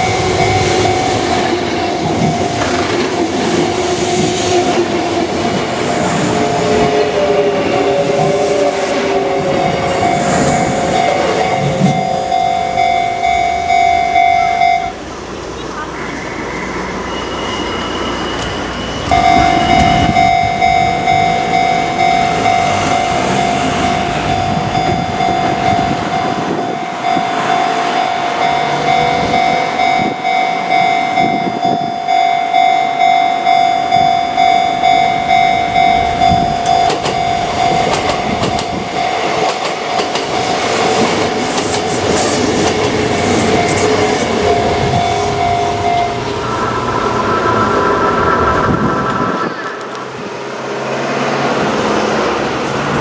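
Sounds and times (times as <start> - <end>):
level crossing warning bell: 0.0 - 2.7, 9.0 - 15.2, 16.9 - 46.7
train rumbling past: 0.0 - 53.0.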